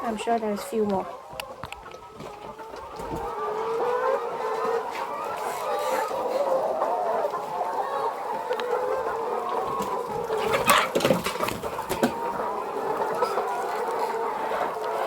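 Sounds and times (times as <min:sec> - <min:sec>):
hens clucking: 0:00.0 - 0:15.0
knocks and rustling: 0:10.5 - 0:12.2.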